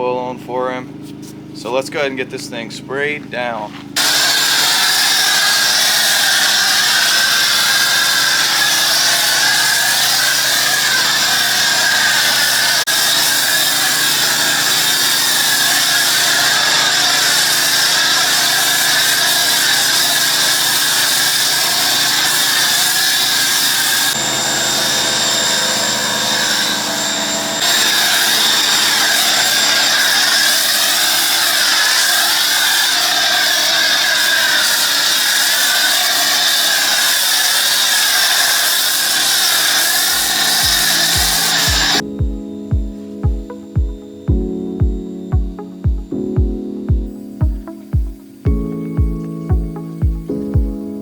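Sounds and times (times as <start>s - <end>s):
pressure washer motor drone: 0.0s - 51.0s
hissing water spray: 4.0s - 42.0s.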